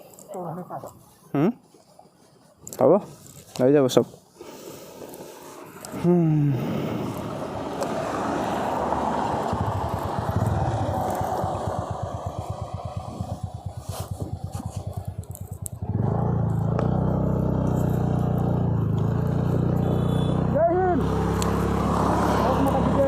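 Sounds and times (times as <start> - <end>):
road noise: 2.0 - 23.0
rushing wind: 4.7 - 16.2
motorcycle engine idling: 8.2 - 23.0.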